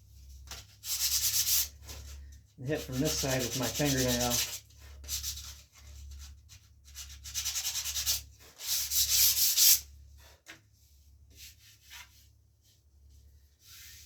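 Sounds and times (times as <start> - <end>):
sandpaper scraping rawhide: 2.7 - 4.6.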